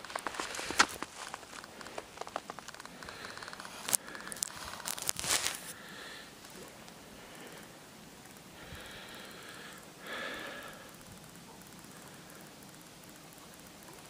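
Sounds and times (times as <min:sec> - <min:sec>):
sharp crack: 0:00.0 - 0:05.8
crunching and rustling: 0:00.0 - 0:07.0
crackles: 0:00.0 - 0:14.0
faint steady hiss: 0:00.0 - 0:14.0.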